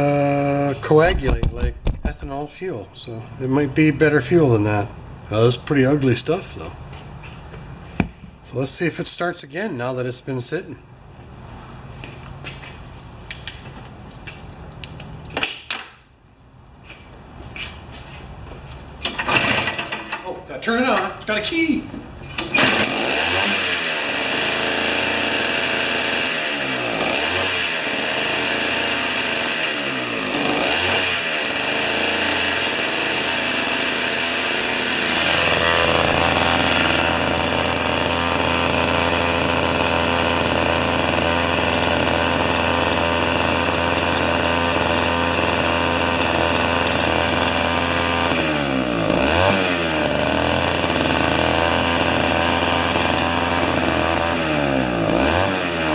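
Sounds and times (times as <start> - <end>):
two-stroke engine running: 19.1 - 20.1, 22.0 - 55.9.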